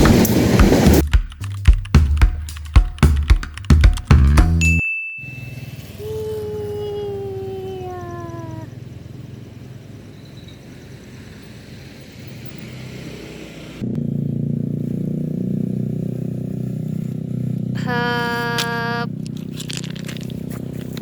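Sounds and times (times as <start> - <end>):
locomotive horn blast: 17.8 - 19.1.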